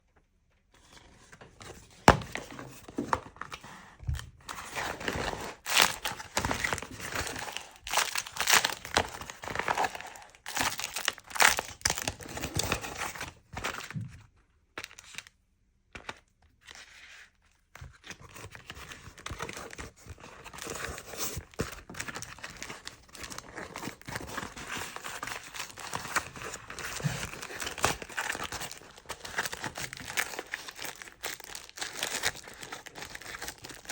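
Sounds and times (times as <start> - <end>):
food wrap crinkling and crackling: 4.8 - 13.5, 20.6 - 33.9.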